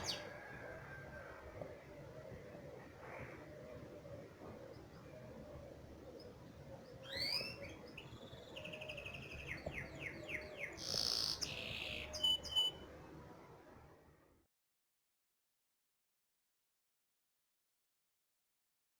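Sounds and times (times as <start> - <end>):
finch song: 0.0 - 0.3, 4.5 - 13.2.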